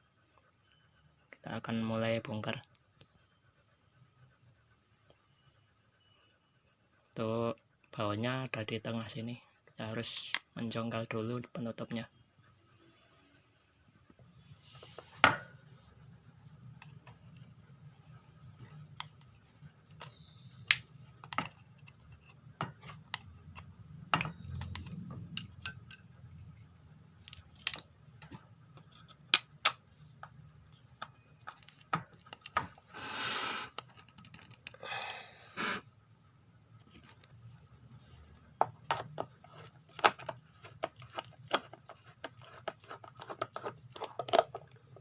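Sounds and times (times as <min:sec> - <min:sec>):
short scraping noises: 0:35.5 - 0:35.9.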